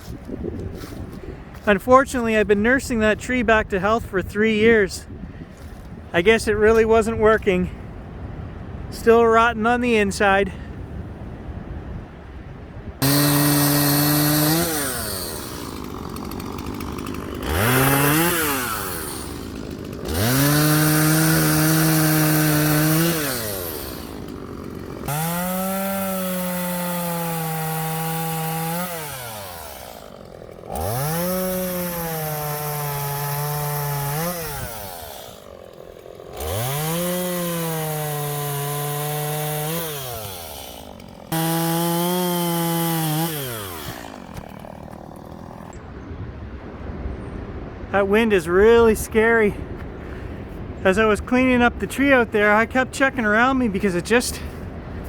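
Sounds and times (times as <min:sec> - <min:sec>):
chainsaw cutting wood: 0:13.0 - 0:45.8.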